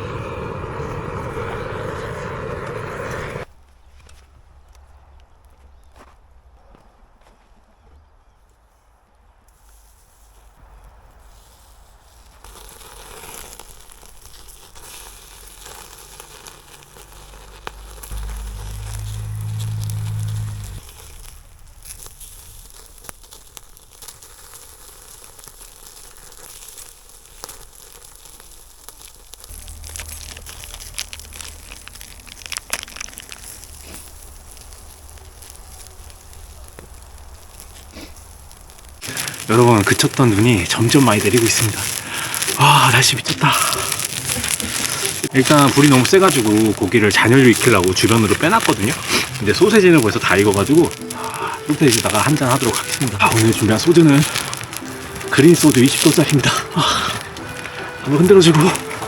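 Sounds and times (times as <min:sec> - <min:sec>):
low rumble: 0:00.0 - 0:03.5, 0:17.0 - 0:23.9, 0:29.5 - 0:43.1
fire crackling and popping: 0:00.0 - 0:05.4, 0:09.6 - 0:59.0.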